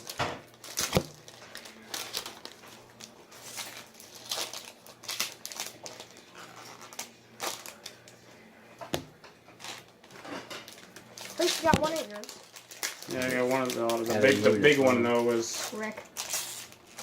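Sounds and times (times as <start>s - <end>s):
wrappers crinkling: 0.0s - 8.5s, 9.6s - 17.0s
cards being handled: 10.8s - 17.0s.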